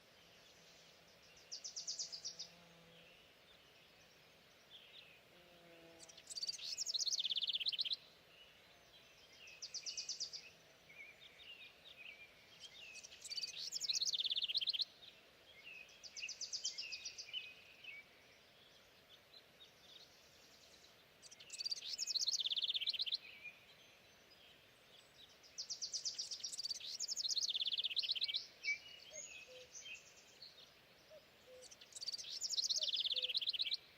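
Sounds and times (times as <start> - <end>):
songbird singing trills: 0.2 - 33.9.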